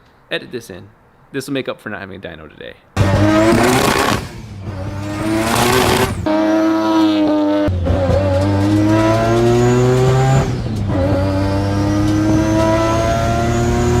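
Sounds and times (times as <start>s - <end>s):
high turbo whine: 3.0s - 14.0s
rotary engine accelerating: 3.0s - 14.0s.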